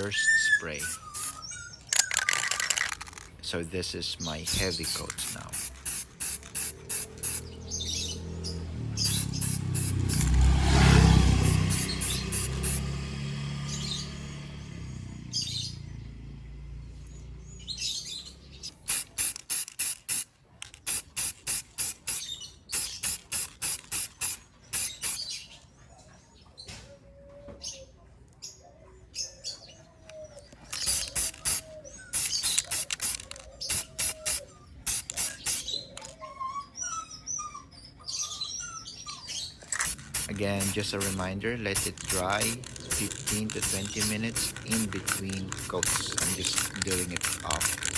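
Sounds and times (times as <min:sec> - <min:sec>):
aerosol spray can hissing: 0:00.8 - 0:01.4, 0:04.4 - 0:07.5, 0:09.0 - 0:12.9, 0:18.8 - 0:25.2, 0:30.8 - 0:35.9, 0:39.8 - 0:47.9.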